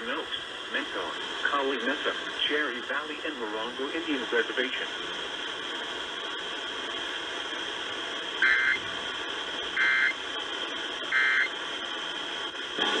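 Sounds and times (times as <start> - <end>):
radio hiss: 0.0 - 13.0
harsh digital data bursts: 8.4 - 8.8, 9.8 - 10.1, 11.1 - 11.5.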